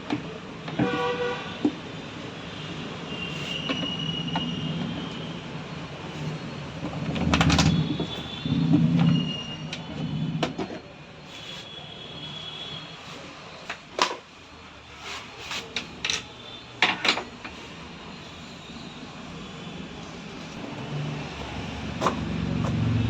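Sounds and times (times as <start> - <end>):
knocks and clinks of tools: 15.7 - 17.6.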